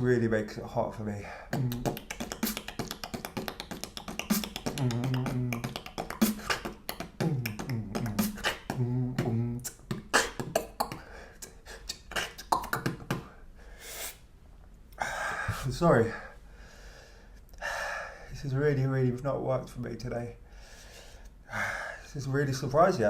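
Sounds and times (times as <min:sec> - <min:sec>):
person beatboxing: 0:01.4 - 0:13.4.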